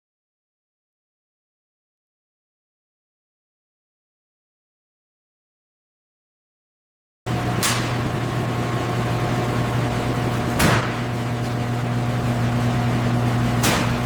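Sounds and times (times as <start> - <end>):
loud machine hum: 7.3 - 14.0.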